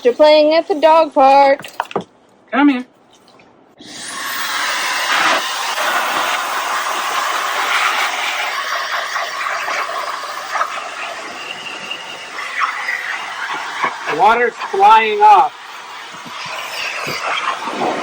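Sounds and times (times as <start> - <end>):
pet blow dryer rushing air: 3.9 - 18.0.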